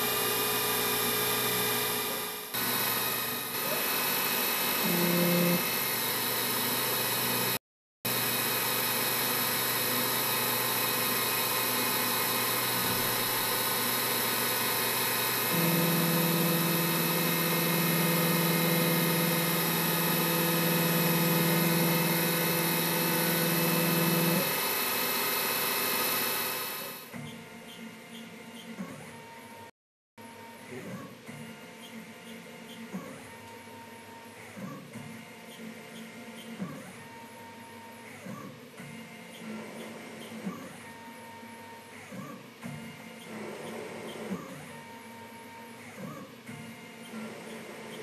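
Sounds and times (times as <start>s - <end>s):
lathe electric whine: 0.0s - 27.1s.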